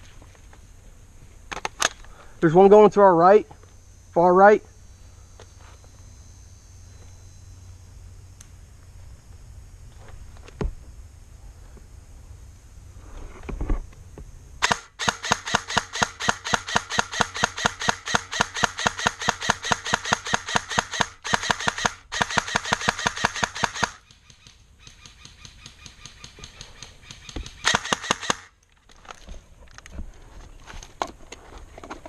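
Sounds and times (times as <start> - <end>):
airsoft gun firing bursts: 14.6 - 28.6.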